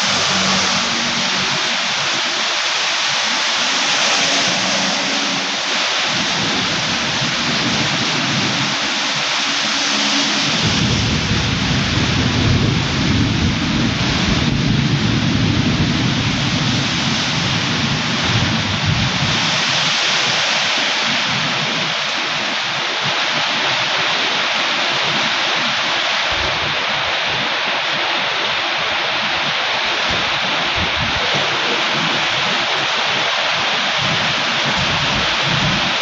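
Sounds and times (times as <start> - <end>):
heavy rain: 0.0 - 36.0
low rumble of thunder: 10.1 - 19.6, 26.3 - 27.1.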